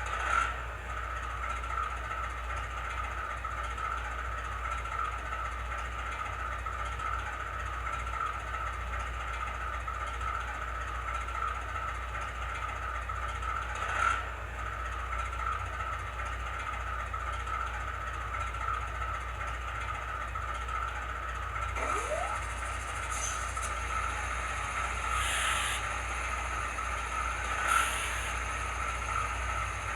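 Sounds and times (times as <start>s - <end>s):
model locomotive engine idling: 0.0s - 29.9s
rising tone: 21.8s - 29.3s.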